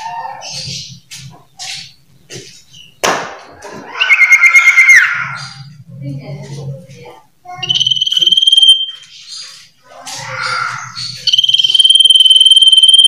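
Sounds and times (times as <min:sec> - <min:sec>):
bird chirps and harsh notes: 0:07.5 - 0:13.0.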